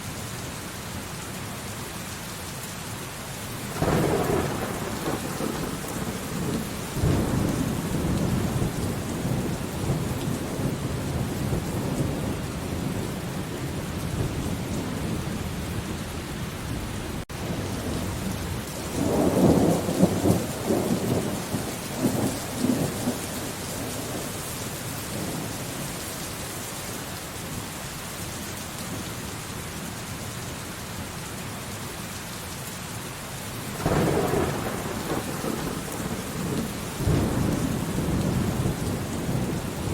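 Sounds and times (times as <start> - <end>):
steady rain falling: 0.0 - 39.9
rolling thunder: 3.7 - 24.4, 33.8 - 39.9.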